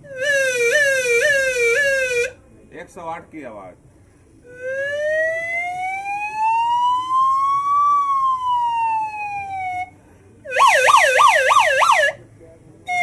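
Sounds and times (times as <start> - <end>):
bamboo flute gliding tone: 0.0 - 2.4, 4.4 - 9.9.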